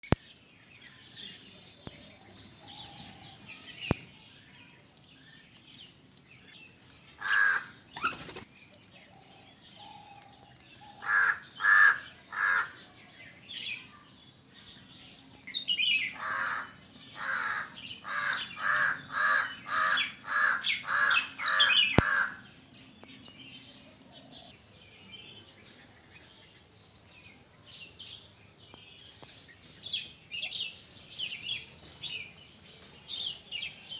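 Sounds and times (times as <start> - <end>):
faint birds chirping: 0.0 - 33.9
bird calling loudly: 16.1 - 22.4.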